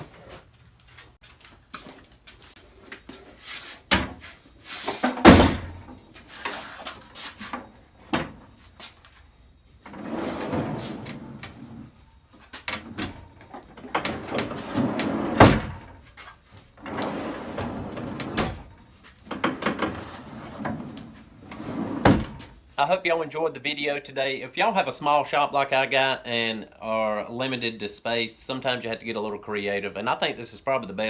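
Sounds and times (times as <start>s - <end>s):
drawer slides sliding: 9.8s - 11.9s, 14.0s - 15.8s, 16.8s - 18.7s, 19.6s - 22.4s.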